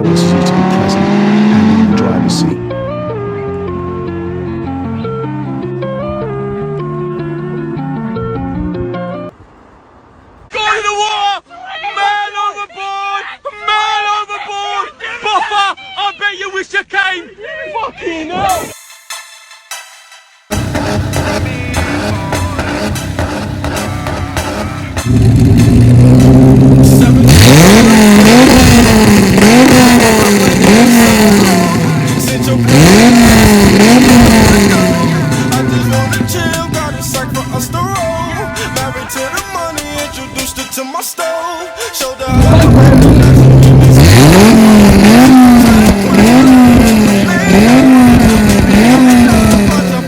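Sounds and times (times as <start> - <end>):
car engine revving: 0.0 - 5.2, 20.5 - 40.5, 42.3 - 50.0.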